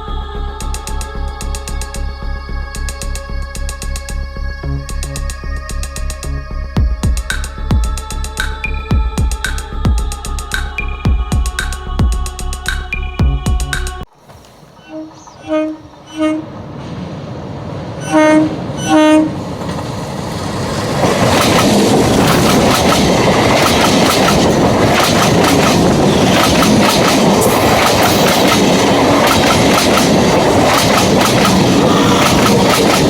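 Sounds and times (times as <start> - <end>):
train horn toots: 14.8 - 16.5, 18.0 - 19.4
train wheels clattering over track: 19.4 - 33.0.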